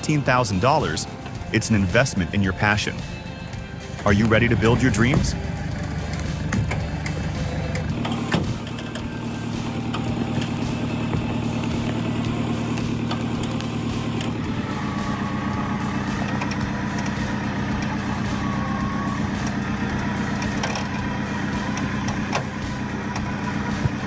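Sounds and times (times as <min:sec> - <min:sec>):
machine engine running: 0:03.0 - 0:24.0
wood cracking and clicking: 0:05.2 - 0:14.6.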